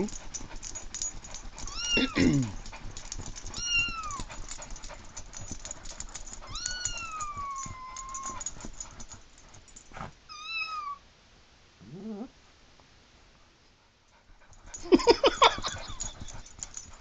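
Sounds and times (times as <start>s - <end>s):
small clicks and taps: 0.1s - 9.9s
kitten meow ringtone: 10.3s - 11.0s.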